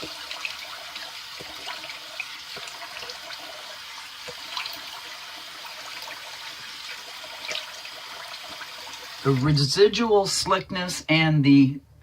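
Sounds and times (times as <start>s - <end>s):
tap water running into sink: 0.0s - 9.6s.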